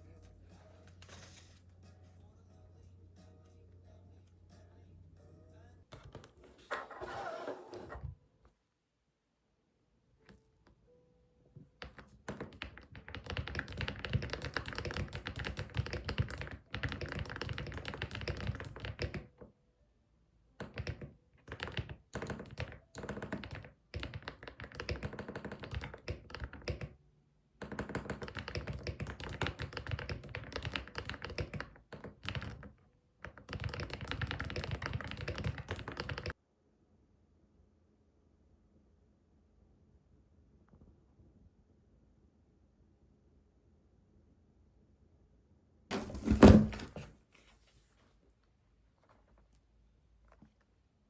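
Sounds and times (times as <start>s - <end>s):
typing on computer keyboard: 11.8s - 19.4s, 20.6s - 27.0s, 27.6s - 36.4s.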